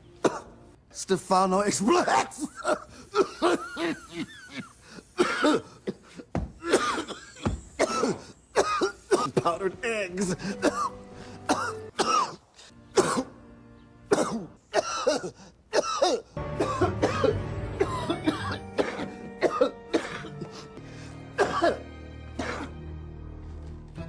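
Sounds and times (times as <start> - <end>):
soft background music: 0.0 - 1.8, 7.8 - 15.2, 15.8 - 24.0
man coughing: 0.2 - 0.6, 1.9 - 9.5, 10.3 - 10.9, 11.5 - 12.4, 13.0 - 13.3, 14.1 - 20.6, 21.4 - 21.8, 22.4 - 22.7.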